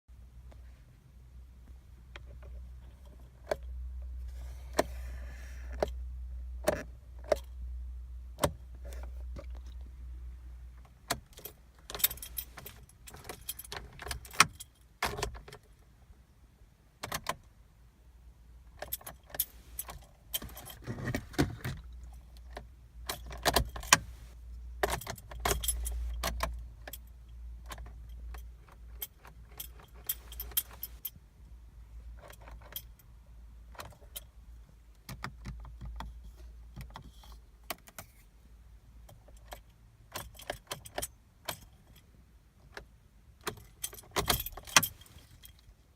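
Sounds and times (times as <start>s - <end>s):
car keys jangling: 11.1s - 15.8s, 18.8s - 31.2s, 32.2s - 33.1s, 39.1s - 42.8s, 43.4s - 45.8s
ignition key clicking: 22.5s - 24.1s, 43.4s - 45.0s.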